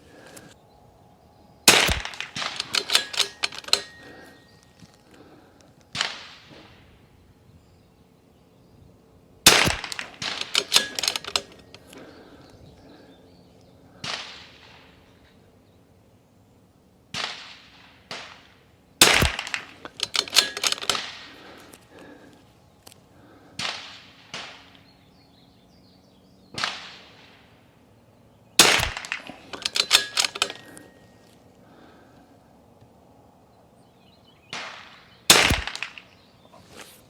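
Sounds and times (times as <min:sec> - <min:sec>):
rifle action clicking: 0:01.7 - 0:04.3, 0:09.5 - 0:12.1, 0:19.0 - 0:21.6, 0:28.6 - 0:30.9
rifle shots: 0:01.7 - 0:04.5, 0:05.9 - 0:06.8, 0:09.4 - 0:12.2, 0:17.1 - 0:22.2, 0:26.6 - 0:27.4, 0:28.6 - 0:31.0, 0:34.5 - 0:36.3.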